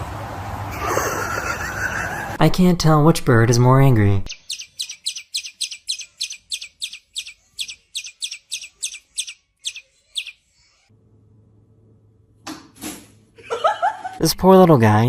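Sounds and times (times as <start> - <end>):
bird chirping rapidly: 4.2 - 10.9.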